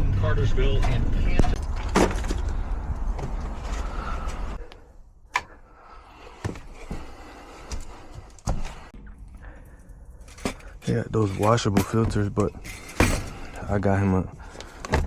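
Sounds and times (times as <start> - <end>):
low vehicle rumble: 0.0 - 4.7.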